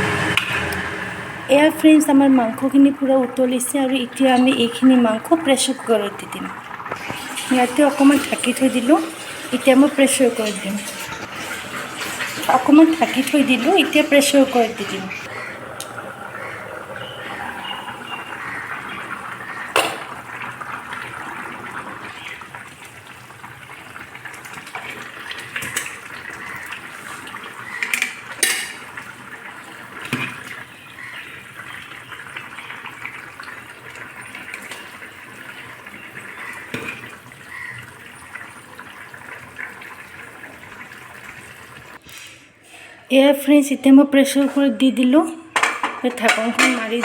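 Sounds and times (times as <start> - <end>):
metal spoon clinking on pots: 27.8 - 28.9, 45.6 - 47.0.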